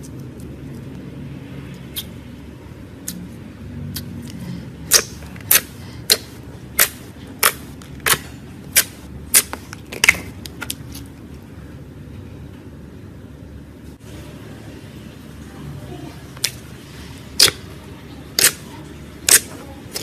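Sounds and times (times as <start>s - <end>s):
low steady hum: 0.0s - 20.0s
slime popping and clicking: 17.4s - 17.6s, 18.4s - 18.6s.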